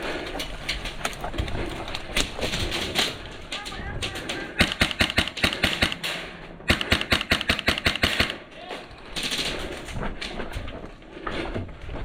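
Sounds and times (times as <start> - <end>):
airsoft gun firing bursts: 4.6 - 8.5.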